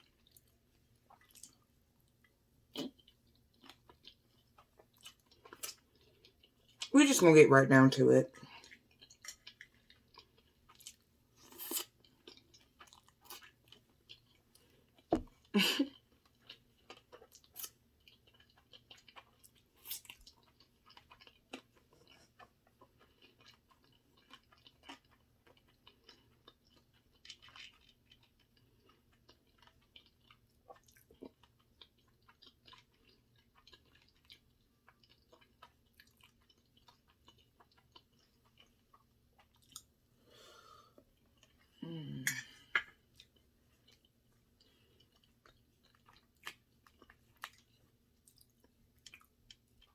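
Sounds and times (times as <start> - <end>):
person chewing food: 0.0 - 6.9, 8.4 - 49.9.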